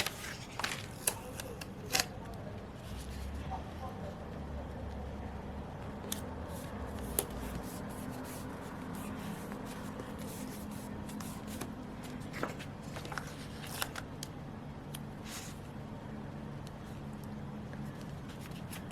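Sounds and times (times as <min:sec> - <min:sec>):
paper rustling: 0:00.0 - 0:02.1, 0:06.1 - 0:14.3, 0:15.2 - 0:15.7, 0:17.8 - 0:18.9.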